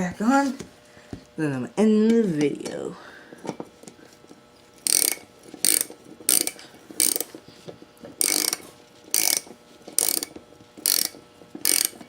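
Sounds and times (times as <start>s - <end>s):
ratchet wrench clicking: 4.8s - 7.3s, 8.2s - 12.0s.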